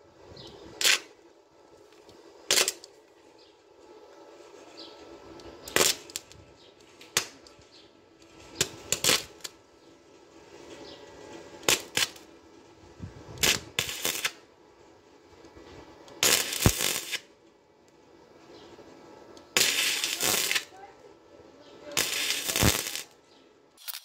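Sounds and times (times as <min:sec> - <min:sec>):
welding arc bursts: 0:00.8 - 0:01.2, 0:02.5 - 0:02.9, 0:05.6 - 0:06.4, 0:08.3 - 0:09.6, 0:11.6 - 0:12.3, 0:13.4 - 0:14.5, 0:16.1 - 0:17.3, 0:19.5 - 0:20.8, 0:21.8 - 0:23.2.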